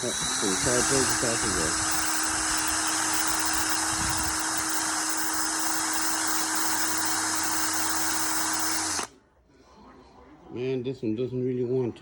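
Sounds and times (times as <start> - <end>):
electric power tool humming: 0.0 - 9.1.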